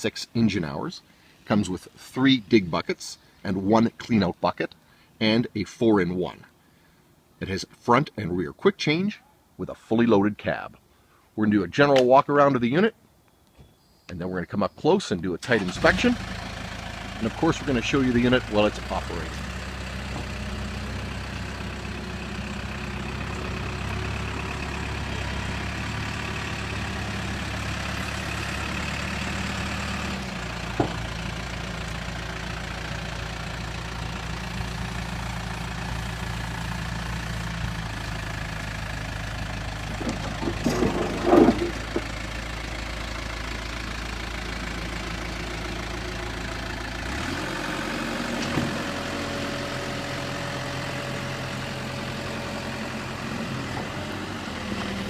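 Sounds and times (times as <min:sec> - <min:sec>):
diesel engine idling: 0:15.4 - 0:55.0
clatter of metallic knocks: 0:40.0 - 0:42.2.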